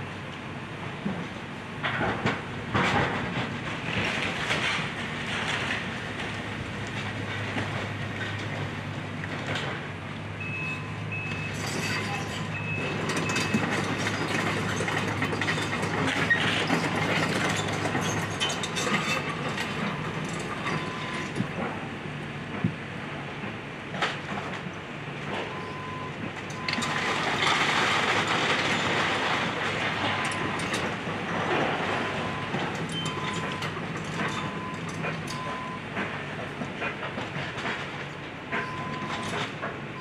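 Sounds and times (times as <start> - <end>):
diesel engine running: 2.7 - 40.0
debris crunching and clattering: 11.5 - 21.6, 26.5 - 36.2.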